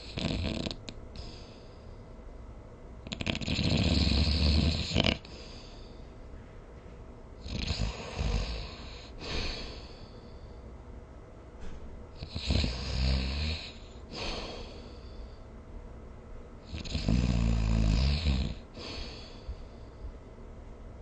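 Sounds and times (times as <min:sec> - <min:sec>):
person snoring: 0:00.0 - 0:01.6, 0:03.1 - 0:05.7, 0:07.4 - 0:10.1, 0:12.2 - 0:15.1, 0:16.7 - 0:19.5.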